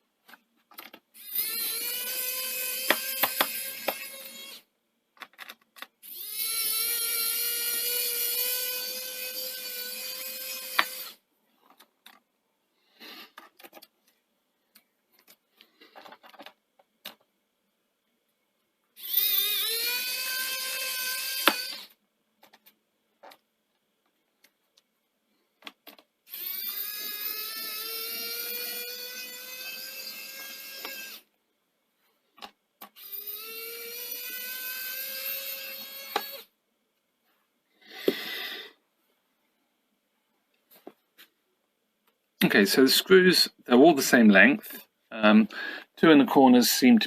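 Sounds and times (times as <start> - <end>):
electric screwdriver whirring: 1.2 - 4.6, 6.0 - 11.2, 19.0 - 22.0, 26.3 - 31.3, 32.9 - 36.5.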